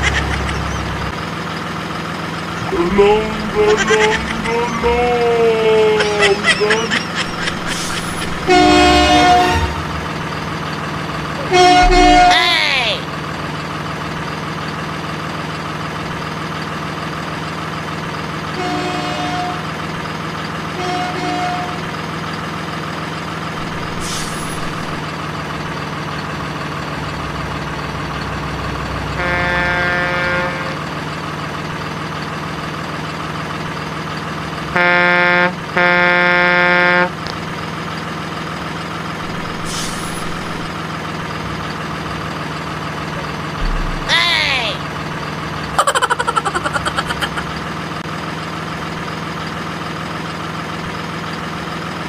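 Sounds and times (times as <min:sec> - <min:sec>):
truck engine drone: 0:00.0 - 0:52.0
truck horn honks: 0:07.6 - 0:10.4, 0:11.3 - 0:13.0, 0:18.5 - 0:19.8, 0:20.7 - 0:21.9, 0:29.1 - 0:31.0, 0:34.7 - 0:37.2.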